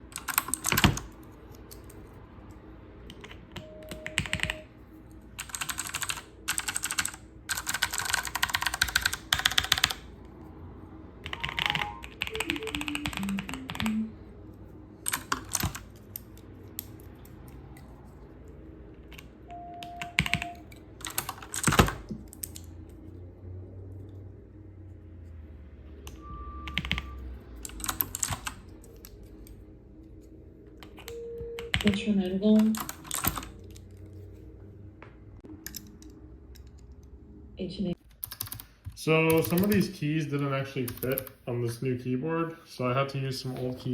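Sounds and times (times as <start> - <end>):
mechanical keyboard typing: 0.0 - 2.0, 3.1 - 4.6, 5.4 - 10.1, 11.2 - 14.1, 15.0 - 17.6, 19.0 - 22.7, 26.7 - 29.1, 30.8 - 33.8, 38.0 - 40.0, 40.9 - 41.3.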